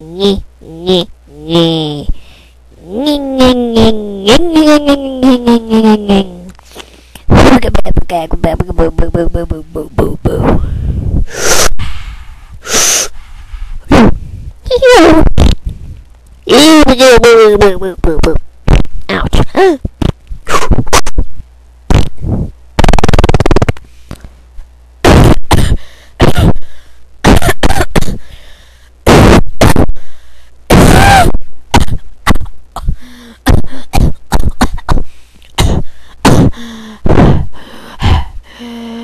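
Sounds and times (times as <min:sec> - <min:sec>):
beatboxing mouth noises: 0:13.9 - 0:14.2, 0:15.0 - 0:15.7, 0:19.7 - 0:21.2, 0:21.9 - 0:23.8, 0:25.0 - 0:26.6, 0:29.1 - 0:29.9, 0:30.7 - 0:35.0, 0:35.6 - 0:37.5.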